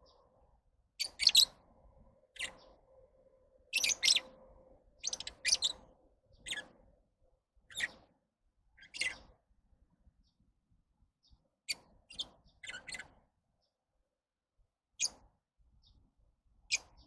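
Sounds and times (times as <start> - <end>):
lovebirds chirping: 1.0 - 1.6, 2.3 - 2.8, 3.7 - 4.3, 5.0 - 6.8, 7.7 - 8.1, 11.7 - 13.2.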